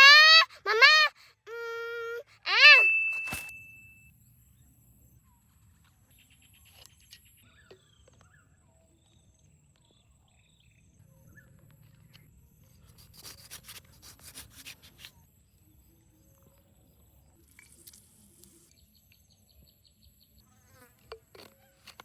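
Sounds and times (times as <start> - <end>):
scratchy rubbing noise: 13.1 - 15.1.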